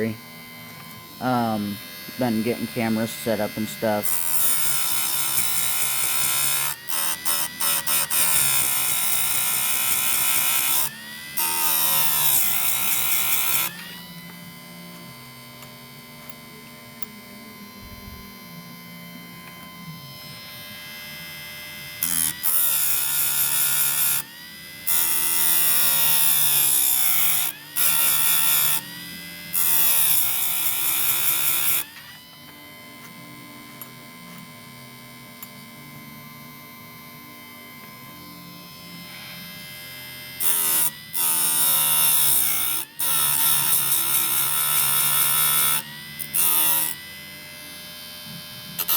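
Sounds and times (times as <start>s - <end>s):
grinder motor running: 0.0s - 48.9s
grinding wheel on chain: 1.2s - 14.0s.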